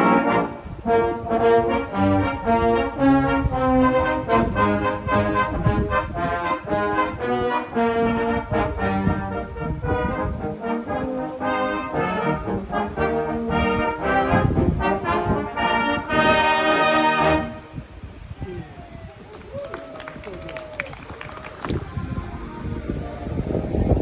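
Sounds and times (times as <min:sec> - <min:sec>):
brass instruments playing: 0:00.0 - 0:18.0.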